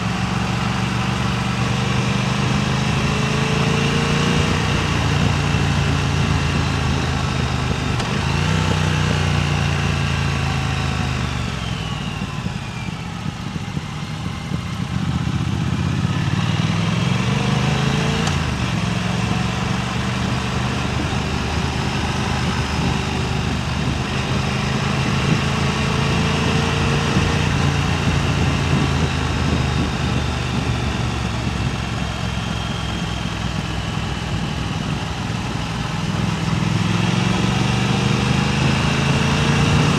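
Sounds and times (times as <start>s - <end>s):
motorcycle engine running: 0.0s - 39.9s
wind rushing over microphone: 13.3s - 39.9s.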